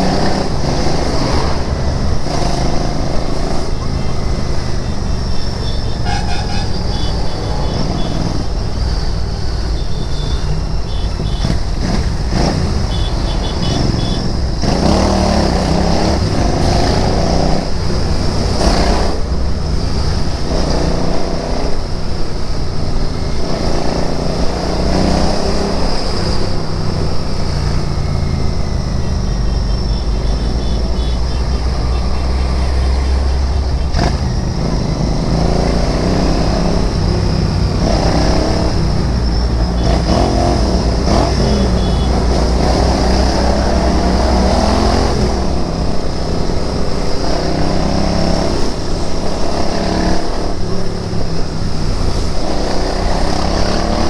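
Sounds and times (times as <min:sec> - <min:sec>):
motorcycle engine running: 0:00.0 - 0:21.1, 0:26.8 - 0:44.4.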